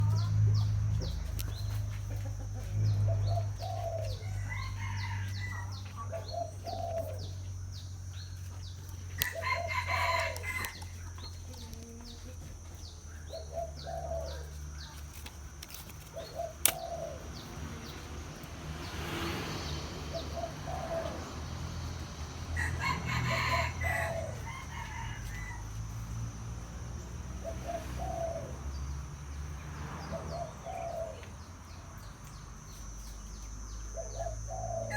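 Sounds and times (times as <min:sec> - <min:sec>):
dove cooing: 0:00.0 - 0:07.6, 0:09.2 - 0:18.0, 0:19.5 - 0:22.0, 0:22.6 - 0:25.6, 0:27.4 - 0:28.7, 0:30.1 - 0:31.3, 0:33.9 - 0:34.9
rooster crowing: 0:03.3 - 0:07.2, 0:09.2 - 0:11.0, 0:22.4 - 0:26.0, 0:34.5 - 0:34.9.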